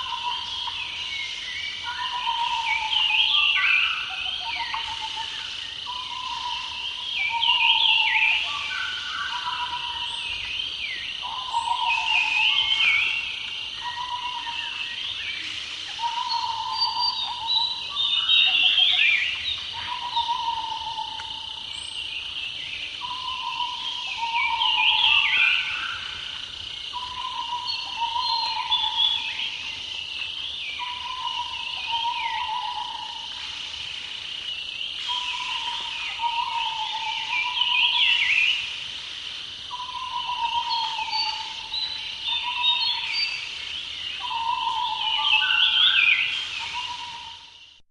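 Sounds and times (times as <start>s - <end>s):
birds warbling: 0.0s - 47.6s
insects trilling: 0.0s - 47.8s.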